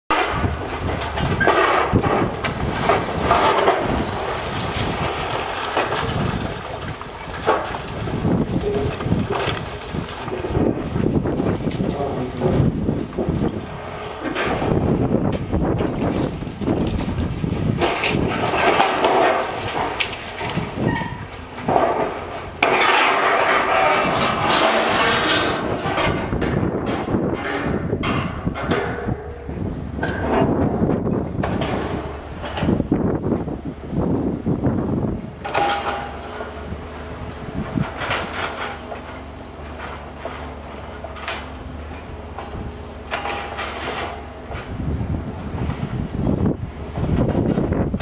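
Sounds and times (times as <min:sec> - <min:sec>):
wind on microphone: 0:00.1 - 0:22.6, 0:23.6 - 0:38.8, 0:42.4 - 0:48.0
breaking masonry crunching: 0:00.1 - 0:48.0
low machine rumble: 0:00.1 - 0:48.0.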